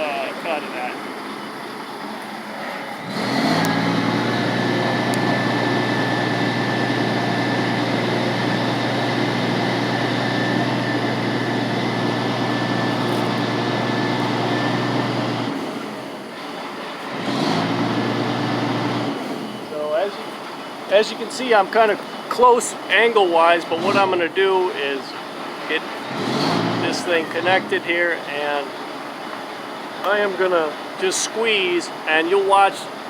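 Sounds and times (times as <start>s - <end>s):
faint high whine: 0.0s - 3.0s
crane engine and hydraulics running: 0.0s - 33.0s.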